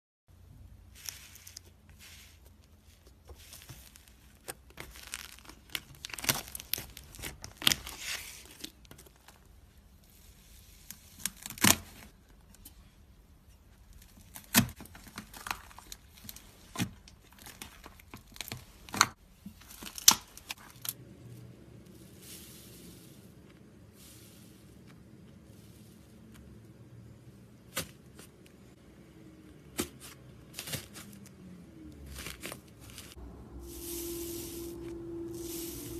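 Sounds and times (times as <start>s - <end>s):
slime crackling: 0.9s - 9.5s.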